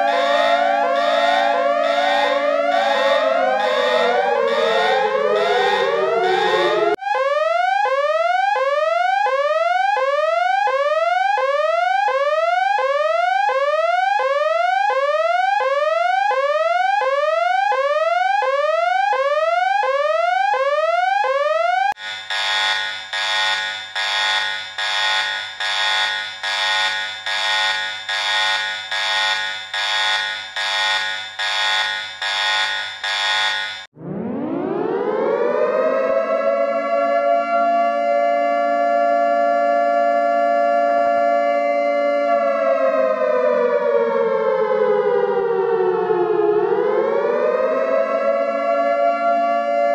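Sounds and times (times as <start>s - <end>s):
rising electronic whoop alarm: 0.0s - 40.3s
harsh buzzing pulsed tone: 22.0s - 33.9s.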